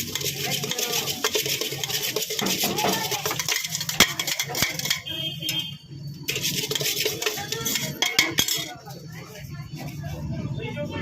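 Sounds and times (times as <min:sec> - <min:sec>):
metal spoon scraping steel bowl: 0:00.0 - 0:10.3.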